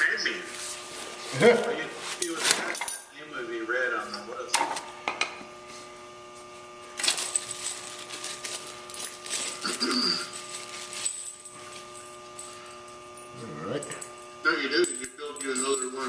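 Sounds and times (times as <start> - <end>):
electrical hum: 0.0 - 16.0
hard parts clinking: 1.4 - 3.1, 7.0 - 16.0.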